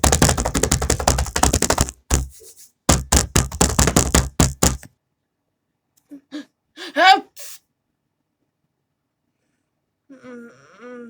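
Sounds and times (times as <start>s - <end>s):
fast loud knocking: 0.0s - 4.9s.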